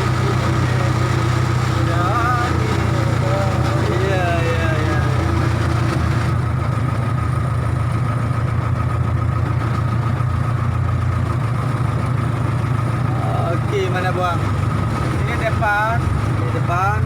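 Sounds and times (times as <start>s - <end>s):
thin steady whine: 0.0s - 6.4s
diesel engine droning: 0.0s - 17.0s.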